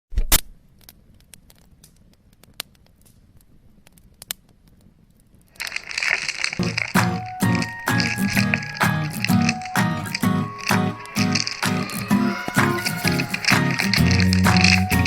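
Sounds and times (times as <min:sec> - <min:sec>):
wrapping crinkling and tearing: 0:05.6 - 0:15.0
music: 0:06.6 - 0:15.0.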